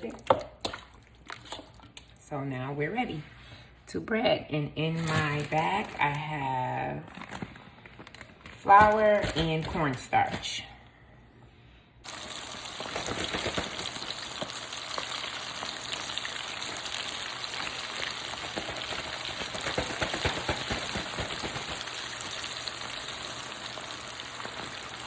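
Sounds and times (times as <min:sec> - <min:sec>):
chicken deep-frying in oil: 0:12.0 - 0:25.0.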